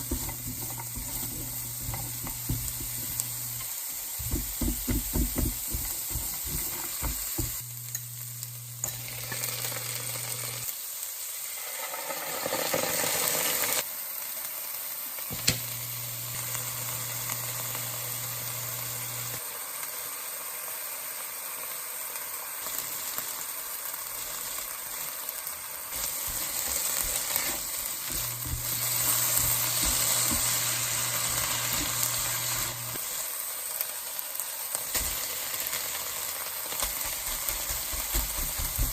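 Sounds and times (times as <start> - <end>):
food sizzling in a pan: 0.0 - 38.9.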